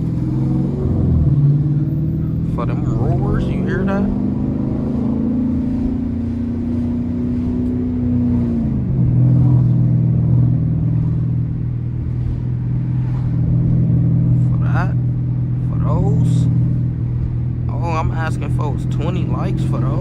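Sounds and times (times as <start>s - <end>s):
car exhaust roar: 0.0s - 20.0s.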